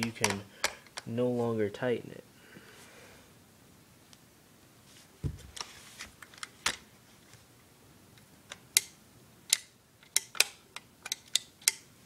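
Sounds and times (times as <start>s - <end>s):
dull thump: 5.2s - 5.5s.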